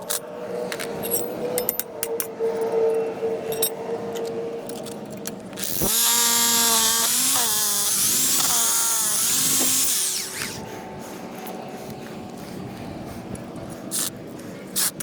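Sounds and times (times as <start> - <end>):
power drill whining: 5.6 - 10.6.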